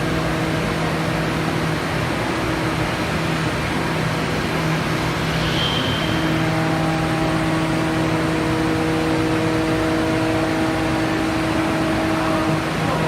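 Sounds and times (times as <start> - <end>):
steady whining tones: 0.0 - 13.0
high whistle: 5.4 - 7.2.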